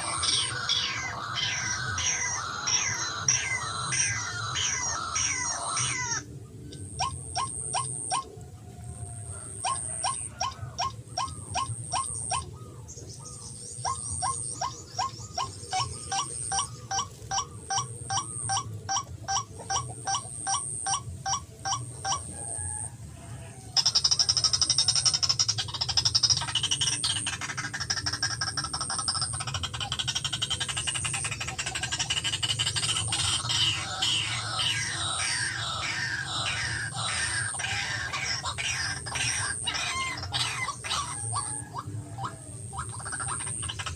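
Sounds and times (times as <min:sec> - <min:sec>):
waterhen calling rising notes: 0:00.0 - 0:06.3, 0:32.2 - 0:43.9.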